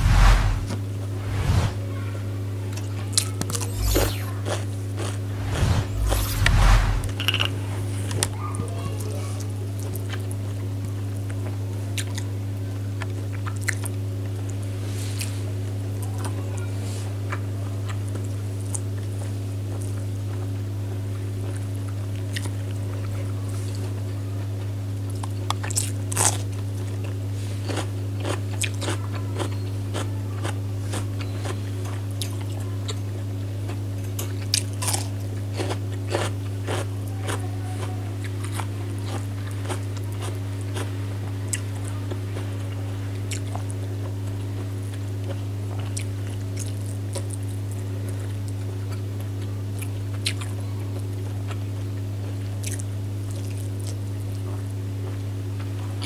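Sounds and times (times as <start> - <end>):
steady low hum: 0.0 - 11.4
crisp bites and wet chewing: 34.2 - 37.4.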